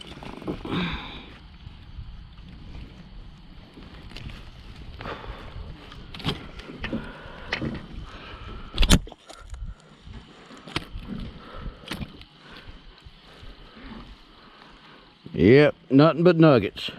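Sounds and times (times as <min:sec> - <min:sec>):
wind rumble on microphone: 0:00.0 - 0:14.3.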